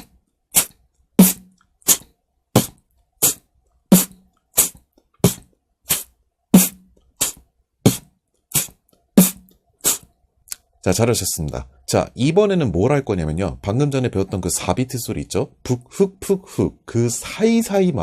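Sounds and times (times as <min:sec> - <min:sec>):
beatboxing kicks and hi-hats: 0:00.0 - 0:10.2.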